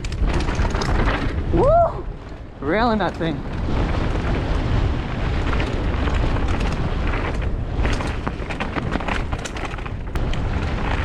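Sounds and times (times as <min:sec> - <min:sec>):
bike clattering over bumps: 0:00.0 - 0:11.0
tyres rumbling on dirt: 0:00.0 - 0:11.0
wind rushing on microphone: 0:00.0 - 0:11.0.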